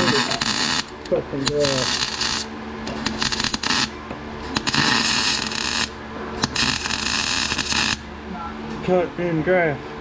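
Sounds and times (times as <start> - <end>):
welder arc crackling: 0.0 - 8.1.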